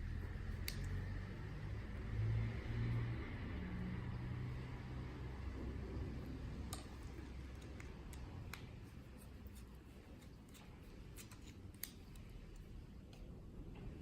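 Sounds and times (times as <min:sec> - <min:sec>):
low steady hum: 0:00.0 - 0:14.0
light clicks and taps of tools: 0:06.6 - 0:13.9.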